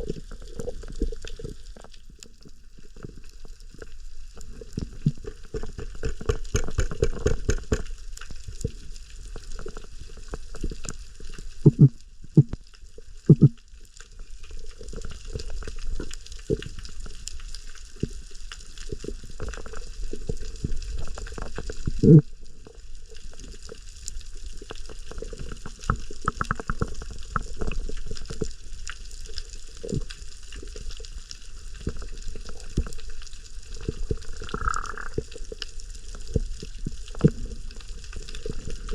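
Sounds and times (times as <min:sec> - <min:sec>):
water bubbling underwater: 0:04.4 - 0:13.7, 0:19.0 - 0:22.4, 0:29.4 - 0:38.9.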